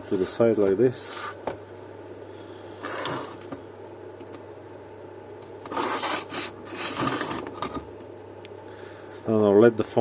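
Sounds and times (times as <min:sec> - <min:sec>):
low steady hum: 0:00.0 - 0:10.0
hard objects scraping a surface: 0:05.7 - 0:07.7.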